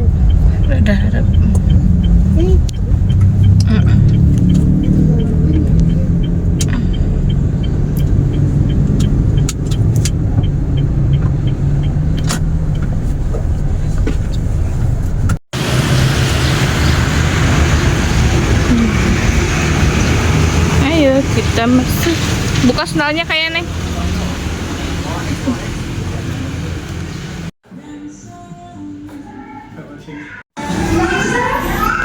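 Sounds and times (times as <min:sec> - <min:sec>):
faint regular ticking: 0:00.0 - 0:13.0
car cabin low rumble: 0:00.0 - 0:15.4
hissy traffic noise: 0:14.9 - 0:27.5.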